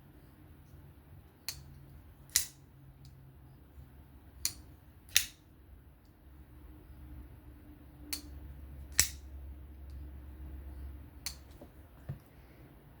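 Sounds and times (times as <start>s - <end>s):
folding knife clicking: 2.3s - 3.2s, 4.4s - 5.4s, 8.9s - 9.3s.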